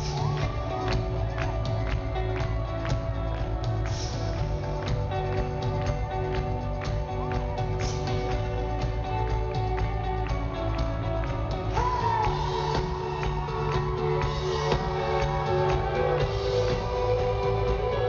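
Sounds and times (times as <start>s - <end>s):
guitars: 0.0s - 18.0s
steady drum beat: 0.0s - 18.0s
person singing: 11.6s - 18.0s.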